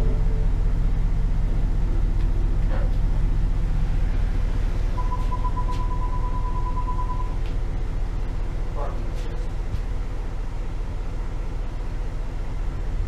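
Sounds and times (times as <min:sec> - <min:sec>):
car engine rumbling: 0:00.0 - 0:13.0
high electronic beep: 0:05.0 - 0:07.4.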